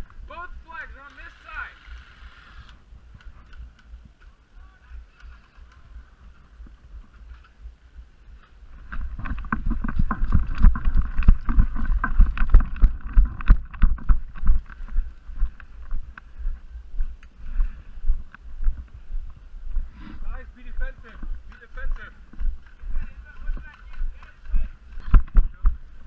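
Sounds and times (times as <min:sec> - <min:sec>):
footsteps: 0:00.0 - 0:26.0
wind rumble on microphone: 0:05.7 - 0:26.0
gear rustling and clattering: 0:08.4 - 0:14.8.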